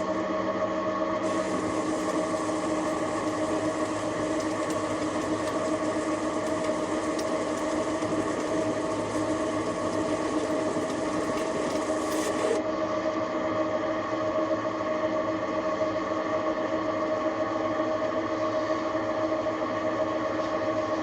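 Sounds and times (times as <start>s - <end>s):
bench lathe humming: 1.2s - 12.6s.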